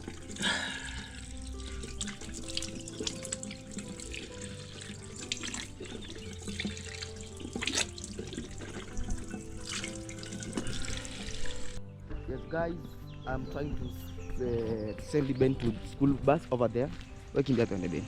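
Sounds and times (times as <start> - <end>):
splashes of face washing: 0.0 - 11.8
background music: 0.0 - 18.0
tap water running into sink: 1.1 - 11.8.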